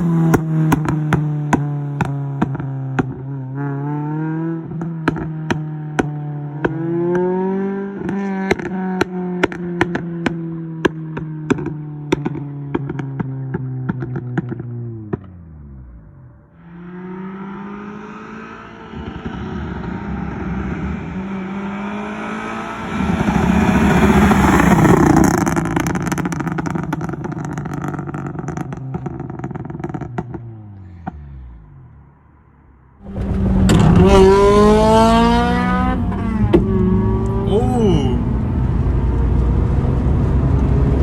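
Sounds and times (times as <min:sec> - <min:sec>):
exhaust pops and crackles: 0:00.0 - 0:03.3, 0:04.7 - 0:07.2, 0:08.0 - 0:15.4, 0:23.3 - 0:31.3
car engine revving: 0:00.0 - 0:41.0.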